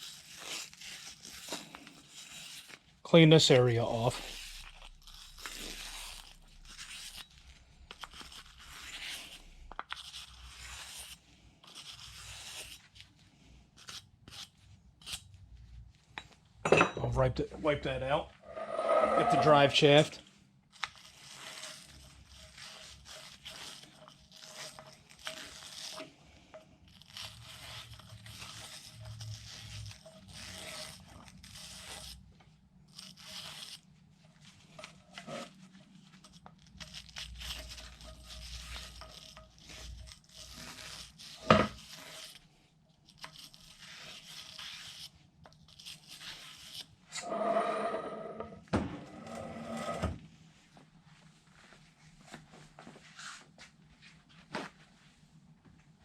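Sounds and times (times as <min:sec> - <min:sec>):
rag scrubbing metal: 0:16.9 - 0:20.1, 0:47.2 - 0:50.1.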